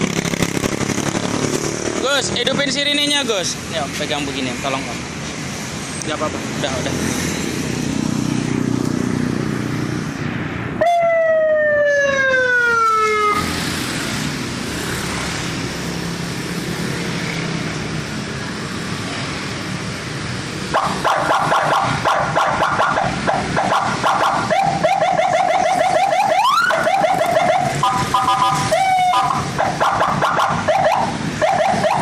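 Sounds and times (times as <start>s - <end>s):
electronic siren: 10.8s - 13.6s, 20.7s - 32.0s.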